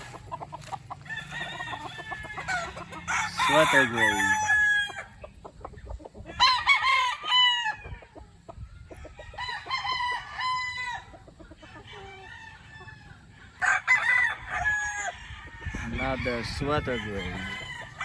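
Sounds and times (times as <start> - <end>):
chicken clucking: 0.0 - 13.8
roosters crowing: 0.0 - 18.0.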